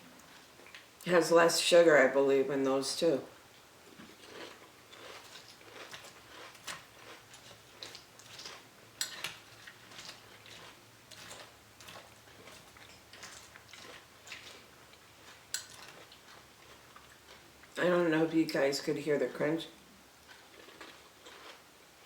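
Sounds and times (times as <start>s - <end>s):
cereal crunching as chewed: 3.9s - 17.8s, 20.2s - 21.7s.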